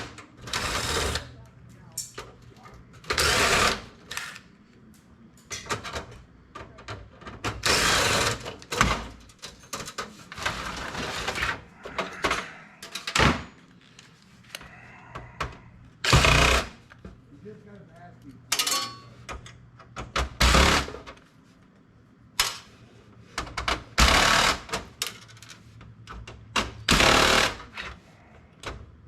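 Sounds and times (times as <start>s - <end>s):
power drill bursts: 3.1s - 4.3s, 16.1s - 16.8s, 26.9s - 27.7s
metal parts clattering: 18.5s - 19.1s.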